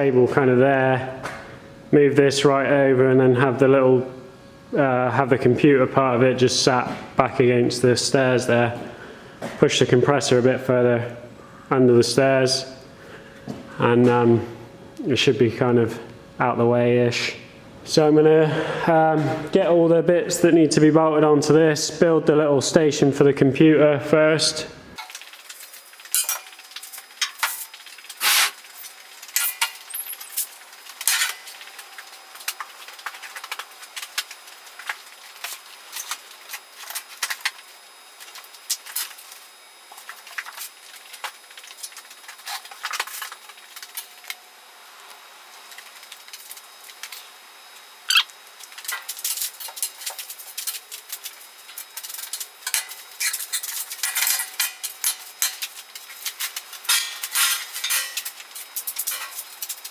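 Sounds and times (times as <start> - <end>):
metal parts clinking and clanking: 25.0 - 31.6, 48.1 - 59.9.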